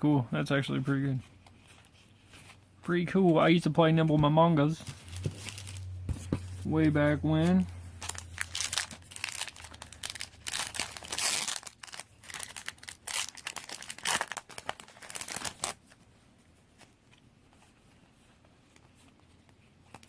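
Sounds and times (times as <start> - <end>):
foil wrapper crinkling and tearing: 5.0 - 5.9, 7.5 - 15.9.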